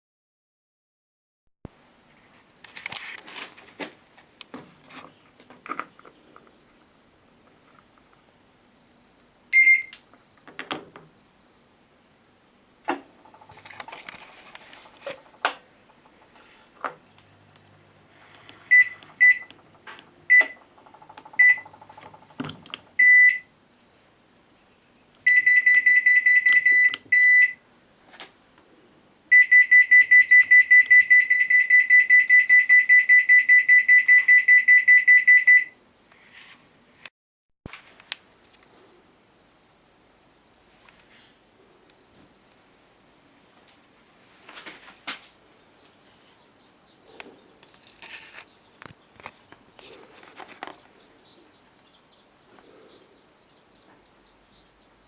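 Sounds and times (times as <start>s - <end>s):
rapidly pulsing beeps: 18.7s - 19.6s, 20.3s - 22.4s.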